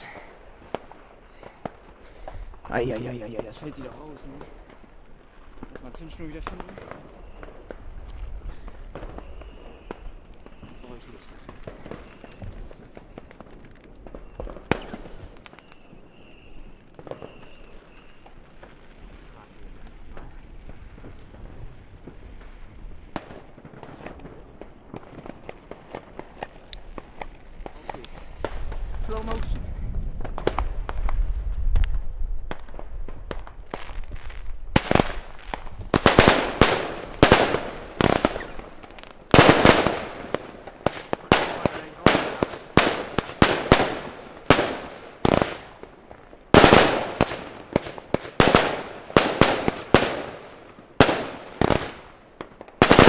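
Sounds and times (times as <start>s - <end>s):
fireworks bangs and crackles: 0.0s - 53.0s
faint high whistle: 15.5s - 18.3s.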